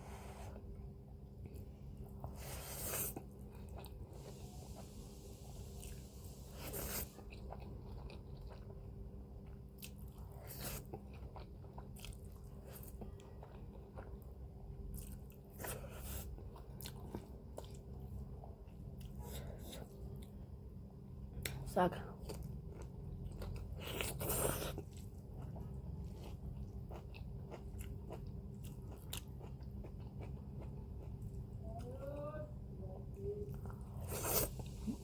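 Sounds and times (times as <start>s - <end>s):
steady low hum: 0.0s - 35.0s
person chewing noodles: 0.1s - 20.4s, 22.2s - 31.9s, 33.5s - 35.0s.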